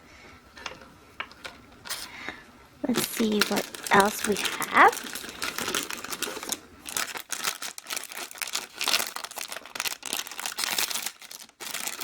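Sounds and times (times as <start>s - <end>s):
packet crinkling: 2.9s - 12.0s
packet tearing: 2.9s - 12.0s.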